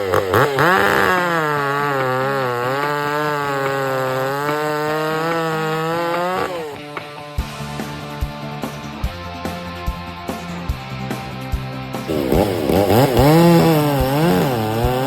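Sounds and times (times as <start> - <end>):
small petrol engine revving: 0.0 - 6.9, 12.0 - 15.0.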